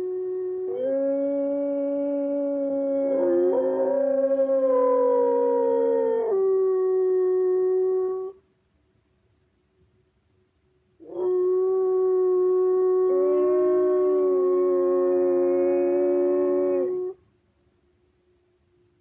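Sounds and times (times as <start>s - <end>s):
wolves howling: 0.0s - 8.3s, 11.0s - 17.2s.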